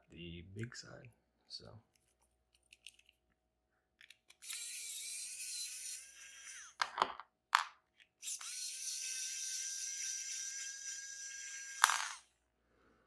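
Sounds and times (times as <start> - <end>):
small tool motor whirring: 4.3 - 6.8, 8.2 - 12.3.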